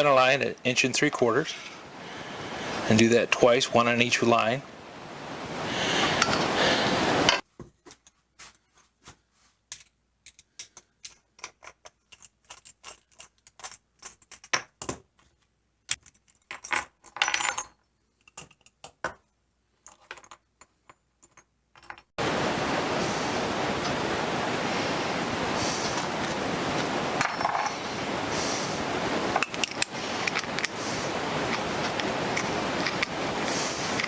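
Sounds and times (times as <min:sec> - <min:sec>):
steady hiss: 0:00.0 - 0:07.4, 0:22.2 - 0:34.0
tools scraping wood: 0:25.6 - 0:34.0
light clicks and taps: 0:29.3 - 0:34.0.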